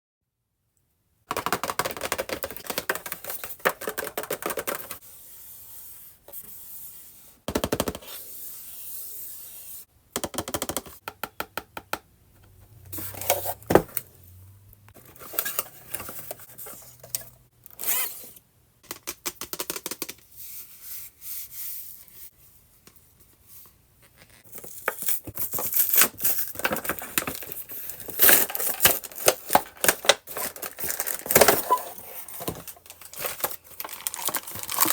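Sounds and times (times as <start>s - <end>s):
plastic and paper crinkling: 24.4s - 34.9s.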